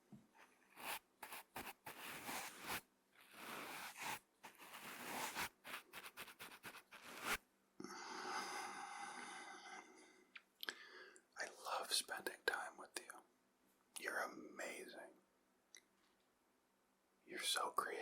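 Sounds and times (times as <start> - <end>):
brush swishing over microphone: 0.6 - 7.4.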